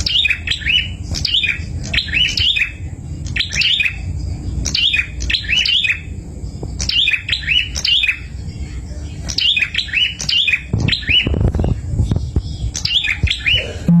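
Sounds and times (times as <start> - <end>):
low rumble: 0.0 - 5.4
songbird chirping: 0.0 - 14.0.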